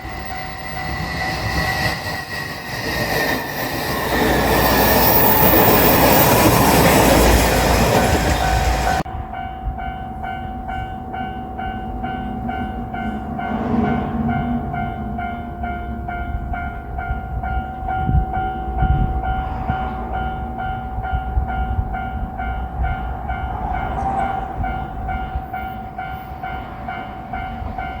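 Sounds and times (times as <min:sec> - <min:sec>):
train rumbling: 0:00.0 - 0:28.0
level crossing alarm ringing: 0:14.7 - 0:28.0.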